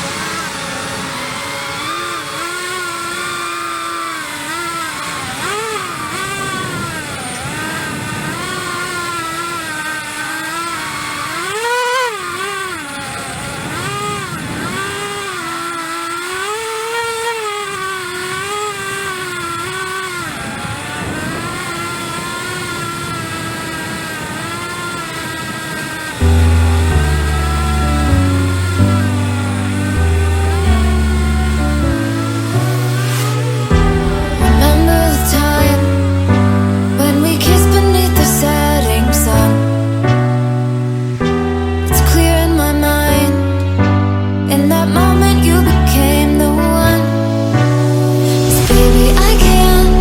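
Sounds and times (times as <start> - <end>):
drone motors whining: 0.0 - 50.0
music: 26.3 - 50.0.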